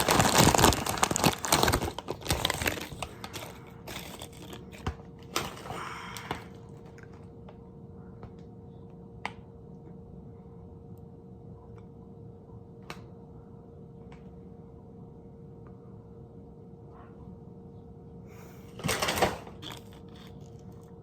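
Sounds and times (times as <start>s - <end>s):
crinkling crunch: 0.0s - 7.2s, 19.4s - 21.0s
faint steady hum: 0.0s - 21.0s.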